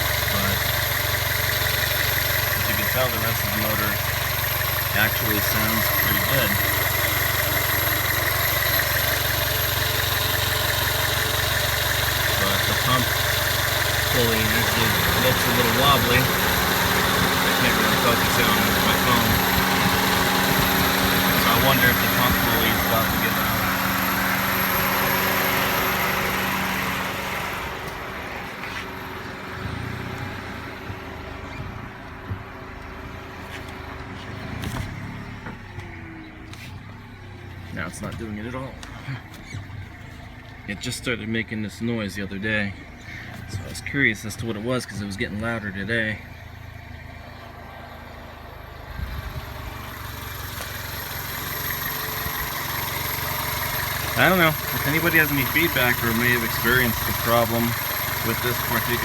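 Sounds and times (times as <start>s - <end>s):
engine knocking: 0.0s - 28.2s, 42.8s - 59.0s
car engine running: 0.0s - 59.0s.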